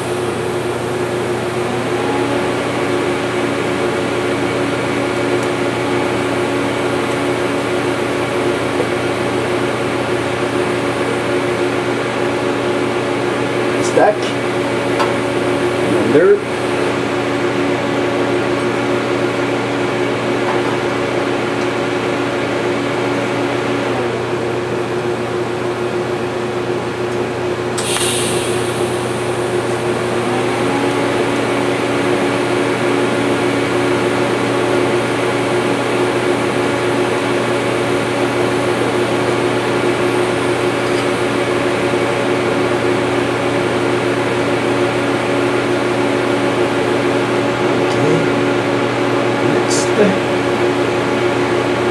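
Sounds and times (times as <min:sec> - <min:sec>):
welding machine humming: 0:00.0 - 0:13.7, 0:21.0 - 0:47.3
high hiss: 0:27.8 - 0:32.6.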